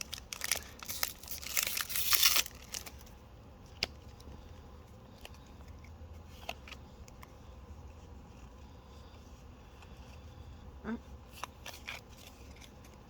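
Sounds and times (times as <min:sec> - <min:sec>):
foil wrapper crinkling and tearing: 0:00.0 - 0:03.1.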